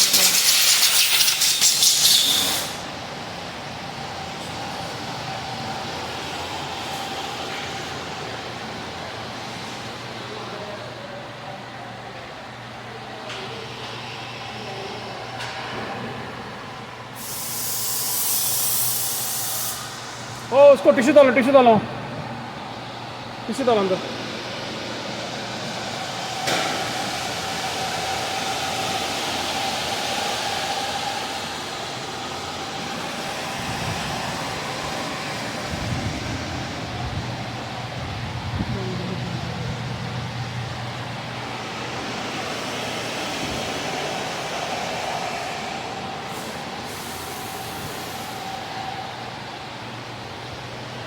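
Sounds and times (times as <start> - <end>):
bright hiss: 0.0 - 2.8, 17.2 - 20.3
loud hiss: 0.0 - 2.9, 17.2 - 20.9, 41.5 - 48.8.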